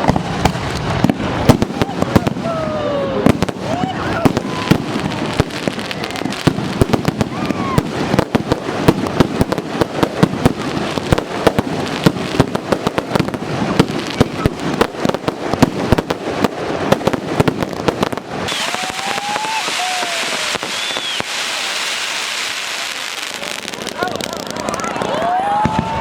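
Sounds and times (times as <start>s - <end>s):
firecrackers popping: 0.0s - 26.0s
steady hiss with whistling tones: 18.5s - 23.2s.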